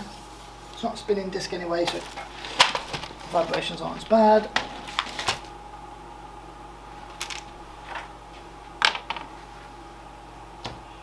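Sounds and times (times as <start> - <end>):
steady background hum: 0.0 - 11.0.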